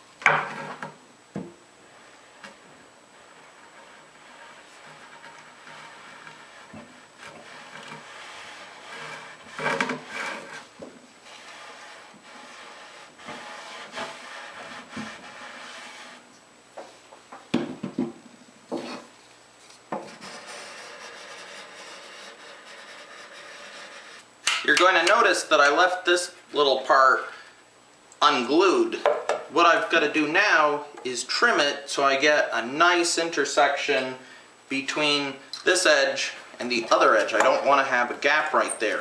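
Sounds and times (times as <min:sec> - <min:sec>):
wood block rubbing on plywood edge: 0:02.0 - 0:16.2, 0:20.0 - 0:24.2.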